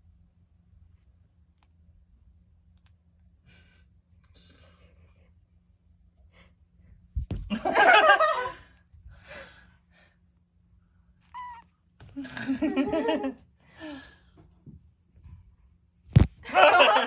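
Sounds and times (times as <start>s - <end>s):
light thump: 7.2s - 7.8s.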